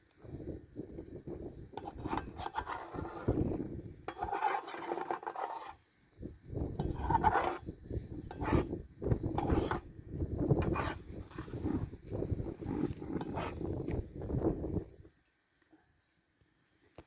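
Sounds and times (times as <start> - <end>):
scraping and rubbing strokes: 1.8 - 3.5, 4.1 - 5.8, 6.8 - 8.8, 9.4 - 9.9, 10.6 - 13.7.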